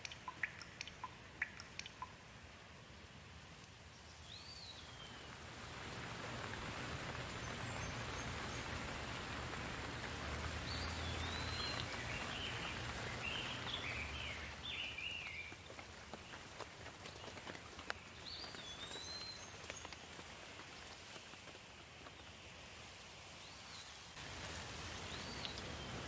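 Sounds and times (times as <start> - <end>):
bird chirping: 0.0 - 2.2, 3.9 - 5.4, 10.3 - 20.0, 25.0 - 26.0
rain falling: 0.0 - 23.4, 24.0 - 26.0.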